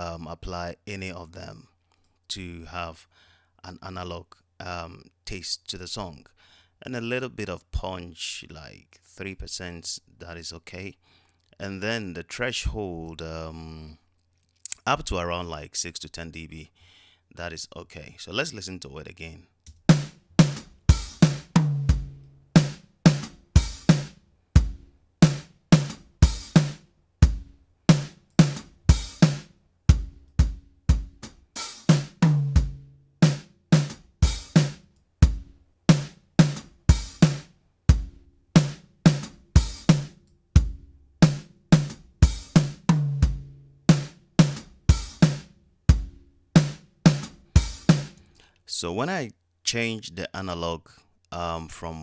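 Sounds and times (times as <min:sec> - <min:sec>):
drum kit beat: 0:19.8 - 0:48.3.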